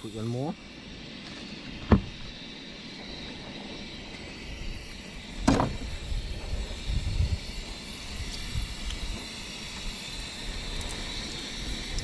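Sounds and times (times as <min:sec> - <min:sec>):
steady hiss: 0:00.0 - 0:12.0.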